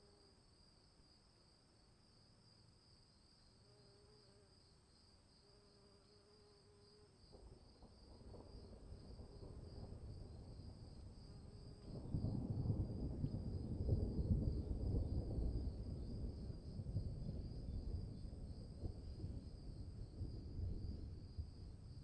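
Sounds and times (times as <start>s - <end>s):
crickets chirring: 0.0s - 22.0s
thunder rumbling: 8.1s - 22.0s.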